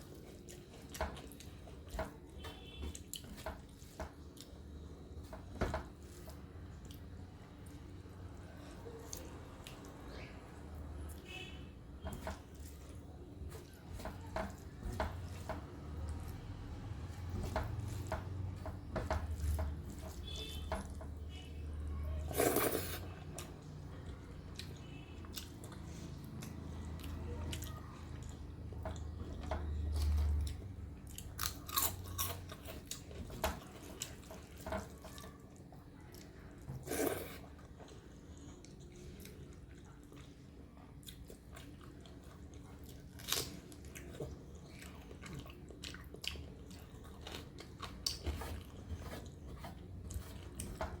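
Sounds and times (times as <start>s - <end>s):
person chewing food: 0.0s - 5.3s, 12.2s - 21.5s, 22.3s - 51.0s.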